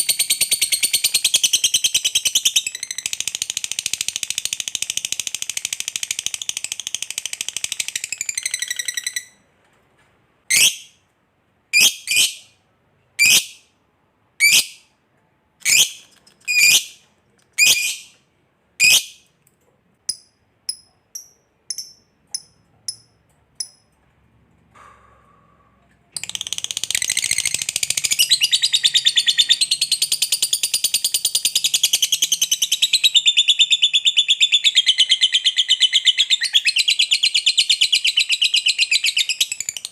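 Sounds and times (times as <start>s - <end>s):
lovebird chattering and chirping: 0.0s - 9.4s, 13.2s - 13.6s, 15.6s - 17.0s, 17.6s - 18.2s, 18.8s - 19.2s, 20.1s - 23.8s, 26.2s - 39.9s.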